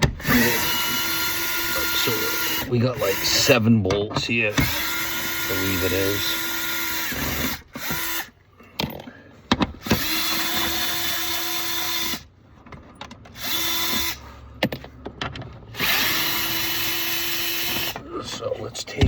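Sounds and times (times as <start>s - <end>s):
cordless drill motor whine: 0.0s - 3.7s, 4.3s - 8.4s, 9.8s - 12.3s, 13.3s - 14.3s, 15.8s - 18.2s.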